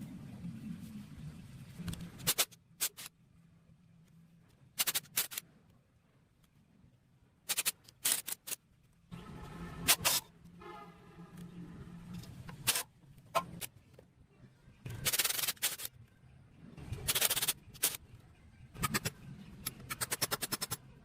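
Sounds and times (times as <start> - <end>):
low hum: 9.0 - 13.3.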